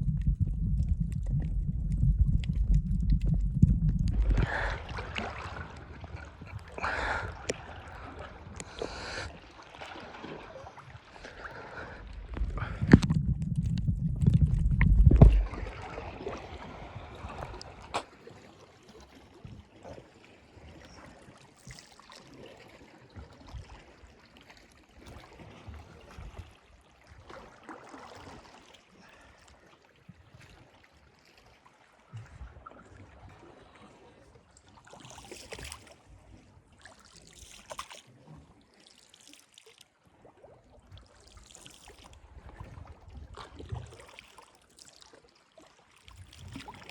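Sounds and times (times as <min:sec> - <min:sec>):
loud low rumble: 0:00.0 - 0:05.2, 0:12.0 - 0:15.8
seawater lapping: 0:00.0 - 0:46.9.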